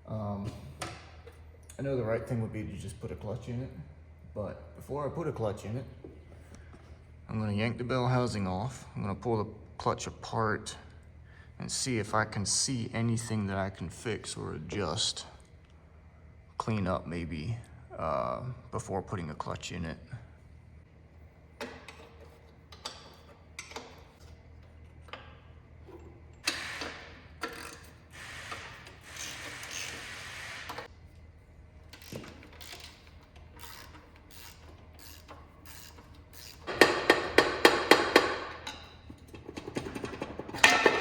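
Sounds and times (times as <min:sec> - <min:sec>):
rapid clicking of ratchet wrench: 0:26.4 - 0:30.9, 0:31.9 - 0:38.8.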